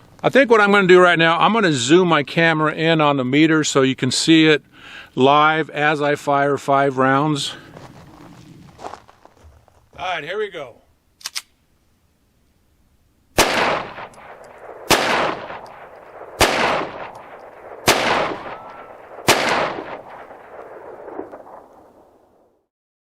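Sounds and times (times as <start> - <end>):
small clicks: 11.2 - 11.6
pistol shots with echo: 13.4 - 21.8.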